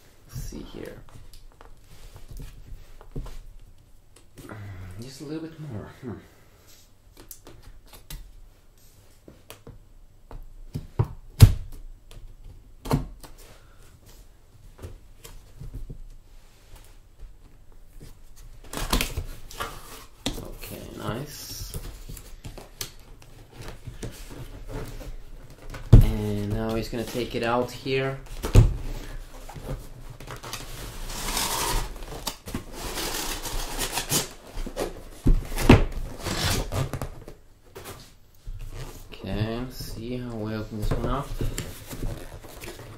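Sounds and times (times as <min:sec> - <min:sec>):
cardboard box scraping: 0:30.7 - 0:37.0.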